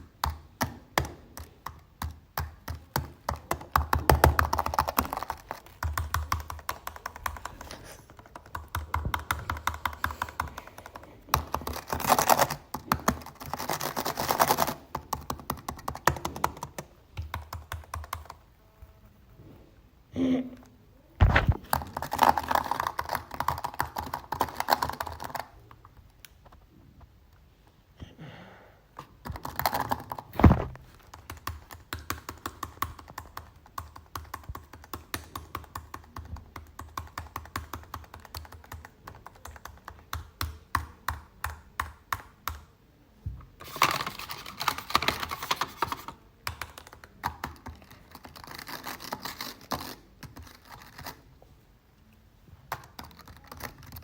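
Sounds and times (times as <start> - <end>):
computer keyboard typing: 0.0 - 18.5, 21.3 - 25.5, 31.0 - 42.8, 43.6 - 51.2, 52.7 - 54.0
heavy thump: 21.2 - 21.6, 30.4 - 30.8.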